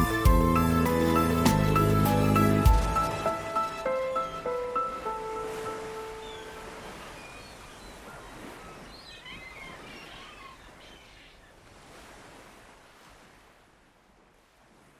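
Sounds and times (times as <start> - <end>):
faint small bird chirps: 6.2 - 11.5.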